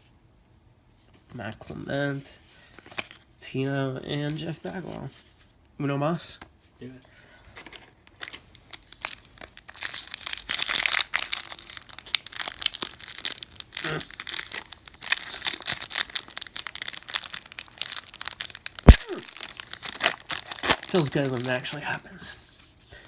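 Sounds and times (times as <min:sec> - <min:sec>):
wrapper crinkling and tearing: 0:07.6 - 0:22.0.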